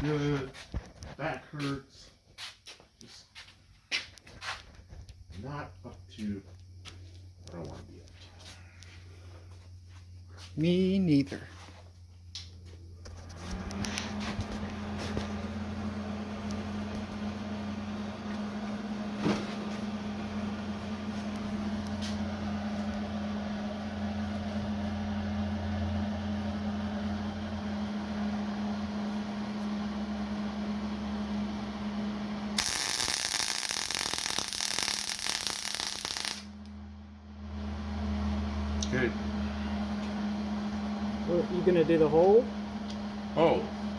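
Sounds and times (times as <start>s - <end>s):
hissing welding arc crackle: 32.6s - 36.5s
welder clicks: 32.6s - 36.5s
welder humming: 32.6s - 36.8s.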